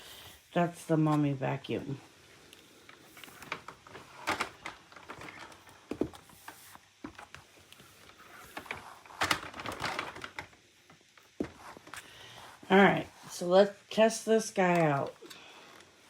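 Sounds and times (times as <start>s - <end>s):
vacuum cleaner parts handled: 2.8s - 12.2s.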